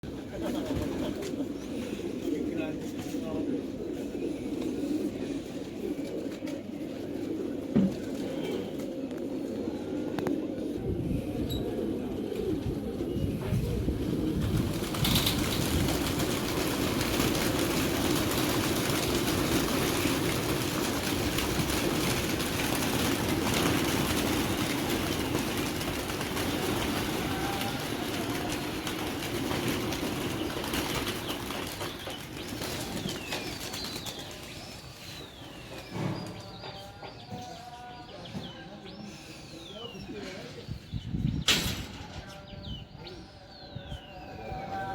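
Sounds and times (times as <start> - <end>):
pigeon flock wingbeats: 0.1 - 10.8, 11.7 - 36.4.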